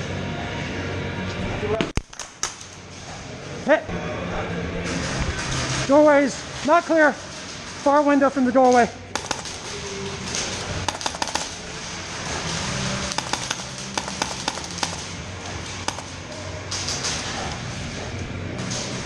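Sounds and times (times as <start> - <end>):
pellets striking hard surfaces: 9.1 - 17.4
airsoft gunshots: 9.2 - 9.8, 10.8 - 11.8, 13.0 - 15.2, 15.8 - 16.5.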